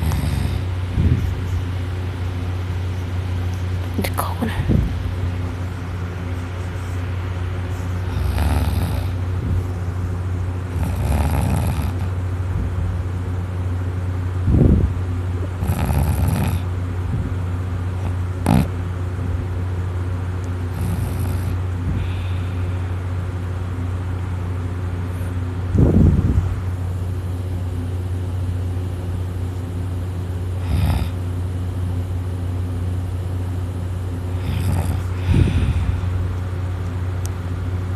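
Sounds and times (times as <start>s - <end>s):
heavy rasping snoring: 0.0s - 1.3s, 8.0s - 9.3s, 10.7s - 12.2s, 15.6s - 16.7s, 18.0s - 18.8s, 20.7s - 22.4s, 30.6s - 31.2s, 34.3s - 36.1s
steady low hum: 0.0s - 37.9s.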